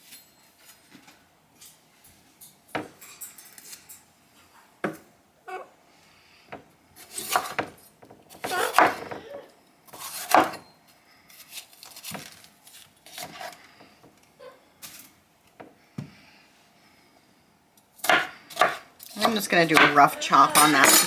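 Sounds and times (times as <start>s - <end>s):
knife chopping on cutting board: 7.1s - 9.1s, 10.0s - 10.6s, 18.0s - 21.0s.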